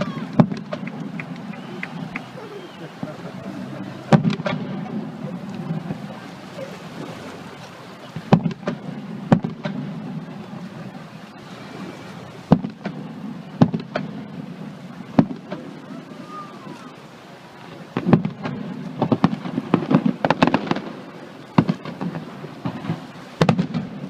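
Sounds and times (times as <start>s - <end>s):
fireworks bangs: 0.0s - 6.2s, 8.1s - 16.9s, 17.9s - 24.0s
steady low rumble: 0.0s - 16.1s
fireworks crackling: 0.0s - 24.0s.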